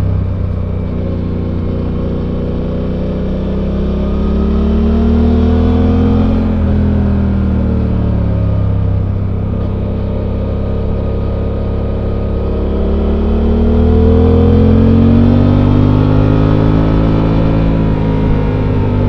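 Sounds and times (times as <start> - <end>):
motorcycle engine accelerating: 0.0 - 19.0.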